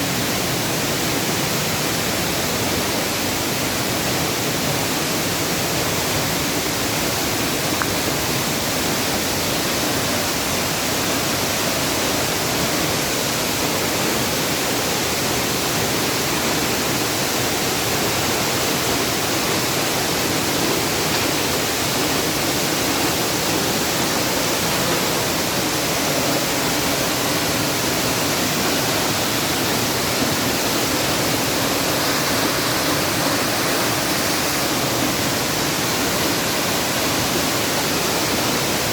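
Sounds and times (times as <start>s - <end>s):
waterfall roaring: 0.0s - 38.9s.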